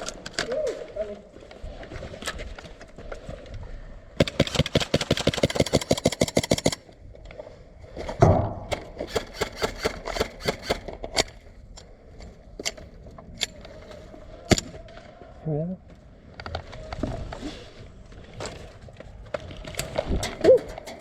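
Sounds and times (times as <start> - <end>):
airsoft rifle full-auto burst: 9.0 - 10.9.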